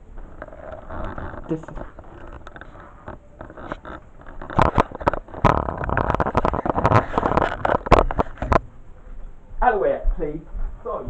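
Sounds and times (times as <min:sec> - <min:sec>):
objects rustling and clattering: 0:00.0 - 0:09.3
clicks knocks and scrapes: 0:00.2 - 0:08.7.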